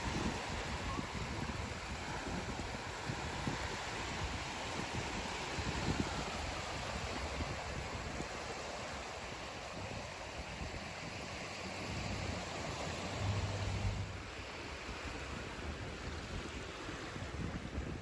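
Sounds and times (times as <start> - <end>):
sea surf: 0.0 - 18.0
wind: 0.0 - 18.0
low rumble: 11.7 - 14.3.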